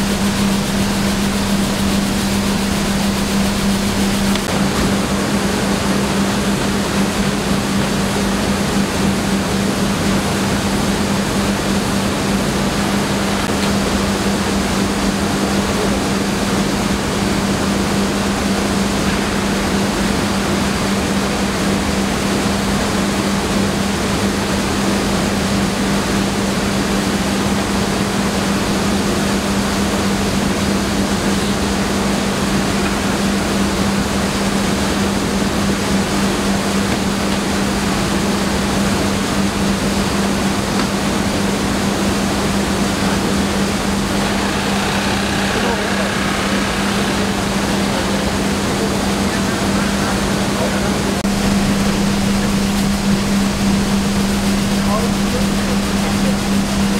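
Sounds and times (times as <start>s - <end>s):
constant low hum: 0.0s - 56.9s
mill machinery running: 0.0s - 56.9s.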